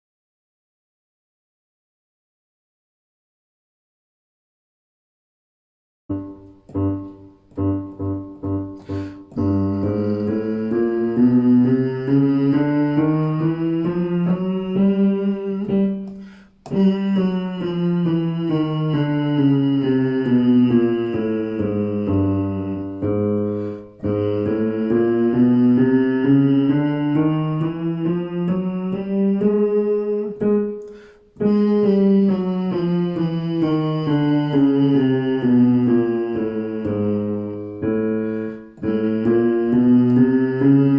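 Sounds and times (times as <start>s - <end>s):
person singing a scale: 6.1s - 40.9s
piano playing: 6.1s - 40.9s
quick breath: 8.8s - 9.4s, 16.1s - 16.7s, 23.4s - 24.0s, 30.9s - 31.4s, 38.2s - 38.8s.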